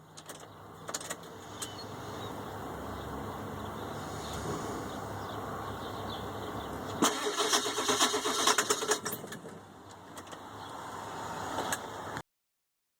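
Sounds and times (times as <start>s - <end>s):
diesel engine cranking: 6.8s - 10.6s
starter whine: 6.9s - 9.4s.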